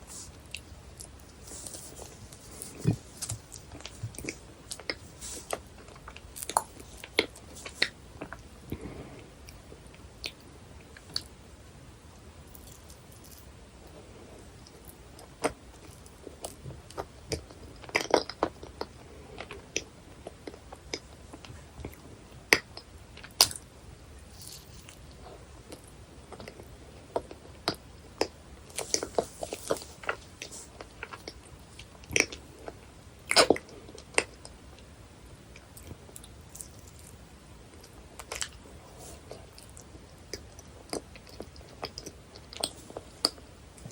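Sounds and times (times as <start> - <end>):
bites and smacks: 14.6 - 23.6, 24.4 - 34.6, 35.6 - 38.6
chewing with sticky mouth clicks: 35.6 - 38.6.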